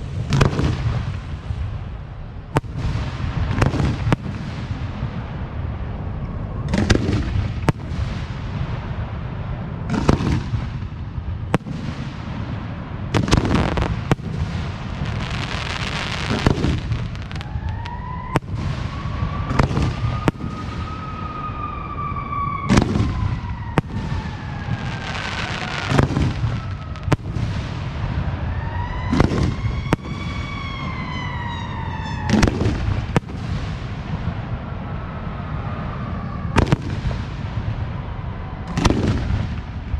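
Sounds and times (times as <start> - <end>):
firework shells booming: 2.5 - 5.5, 9.8 - 20.9, 22.6 - 34.5, 36.5 - 37.9
emergency vehicle siren wailing: 17.0 - 27.2, 28.0 - 33.2, 33.9 - 39.2.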